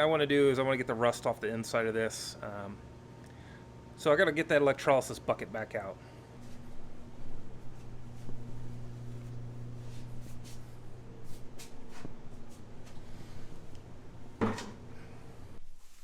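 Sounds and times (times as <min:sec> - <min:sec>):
steady low hum: 0:00.0 - 0:16.0
objects knocking and clattering: 0:14.4 - 0:14.8.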